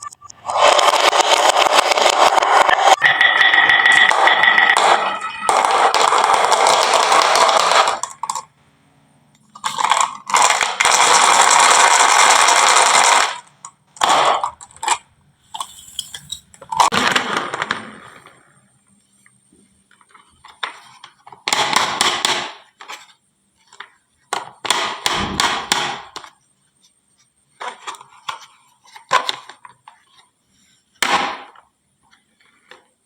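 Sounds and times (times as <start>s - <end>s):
marbles rattling down wooden track: 0.5s - 8.5s, 9.6s - 13.4s.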